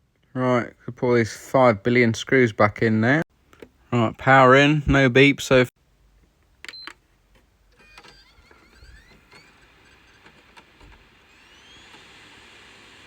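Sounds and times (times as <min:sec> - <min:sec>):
faint rising whine: 0:08.6 - 0:13.0.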